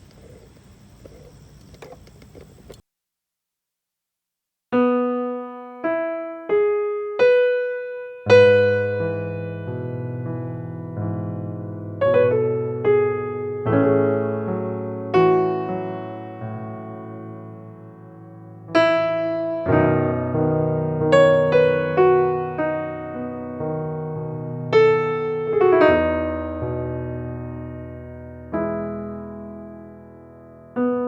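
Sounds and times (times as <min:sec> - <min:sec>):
slow electric piano chords: 0:04.8 - 0:31.0.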